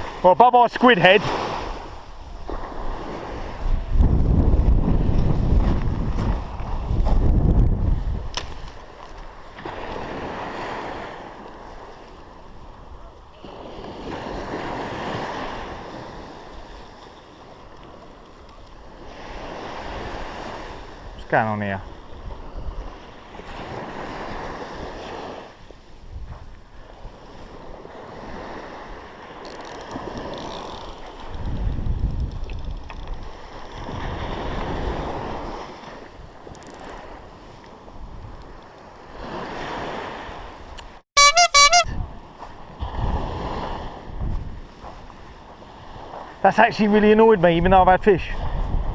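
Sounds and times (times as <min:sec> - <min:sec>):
sea waves breaking on beach: 0:00.0 - 0:41.0, 0:41.7 - 0:47.5, 0:48.2 - 0:48.9
wind buffeting microphone: 0:01.3 - 0:13.0, 0:22.0 - 0:25.4, 0:29.9 - 0:40.8, 0:41.9 - 0:46.4, 0:48.3 - 0:48.9.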